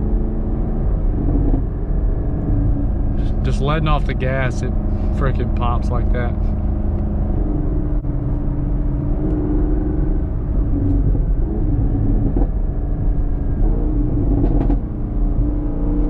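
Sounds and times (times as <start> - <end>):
car engine and exhaust driving: 0.0 - 16.0.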